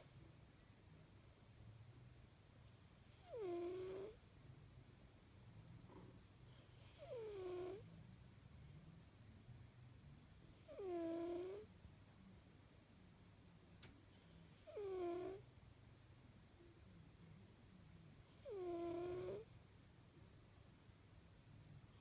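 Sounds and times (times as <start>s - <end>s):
cat snoring: 2.8s - 4.2s, 5.9s - 8.0s, 10.4s - 11.7s, 14.2s - 15.5s, 18.1s - 19.6s.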